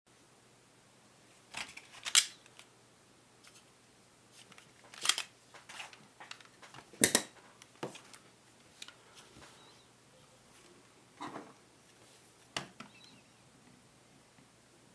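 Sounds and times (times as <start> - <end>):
pistol parts clicking and snapping: 1.6 - 2.6, 4.9 - 5.3, 6.3 - 7.3.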